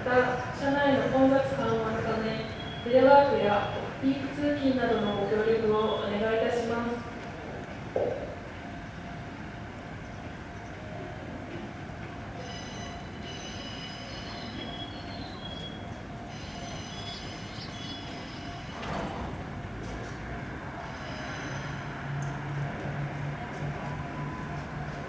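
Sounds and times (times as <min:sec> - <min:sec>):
train moving on rails: 0:00.0 - 0:25.0
high-pitched wheel squeal: 0:20.8 - 0:21.9.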